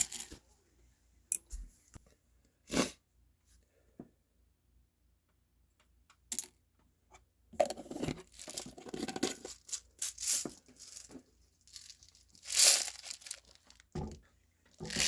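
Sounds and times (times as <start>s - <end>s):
plastic packaging crinkling: 8.2s - 14.0s, 14.8s - 15.0s.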